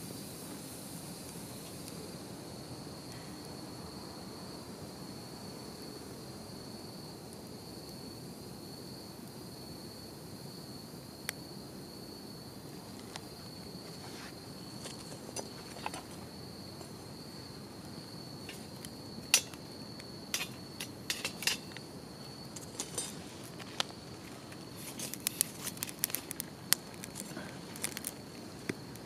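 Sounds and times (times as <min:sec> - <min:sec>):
crickets chirring: 0:00.0 - 0:29.0
wood fire crackling: 0:00.3 - 0:04.0, 0:12.6 - 0:29.0.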